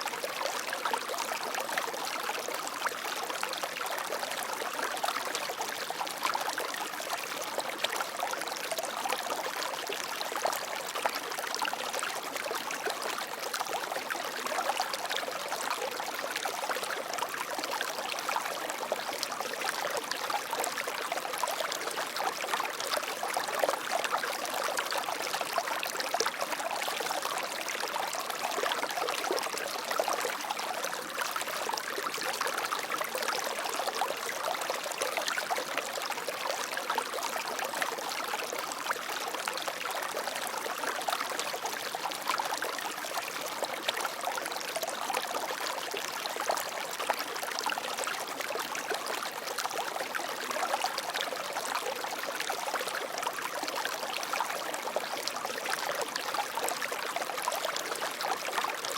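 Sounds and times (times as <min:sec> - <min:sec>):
water flowing in a stream: 0:00.0 - 0:58.9.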